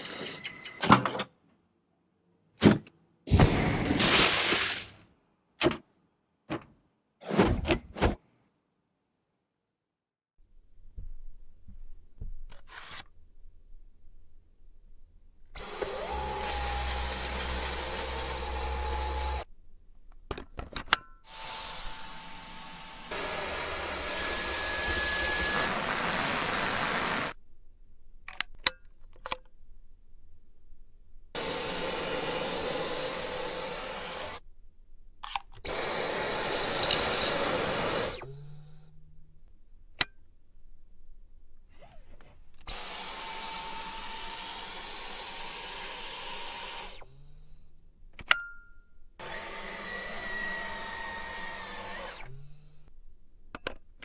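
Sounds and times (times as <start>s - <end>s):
vacuum cleaner running: 15.6s - 19.4s, 21.3s - 27.4s, 31.4s - 34.4s, 35.7s - 38.6s, 49.2s - 52.4s.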